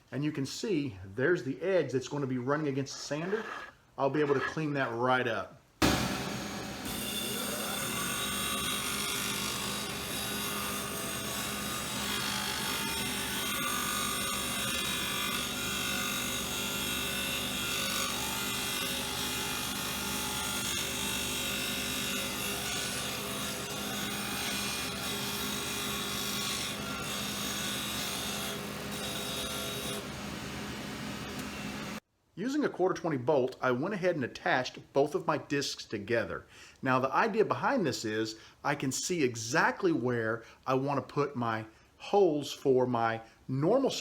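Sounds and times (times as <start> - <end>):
disc sander sanding acrylic: 5.8 - 32.0.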